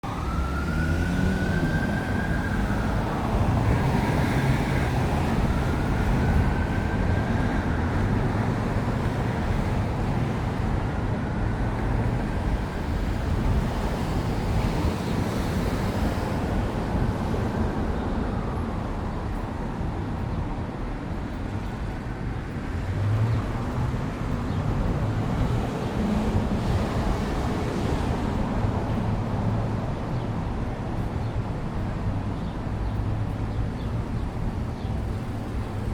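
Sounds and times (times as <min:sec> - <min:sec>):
emergency siren wailing: 0:00.0 - 0:11.3
city street traffic: 0:00.0 - 0:35.9.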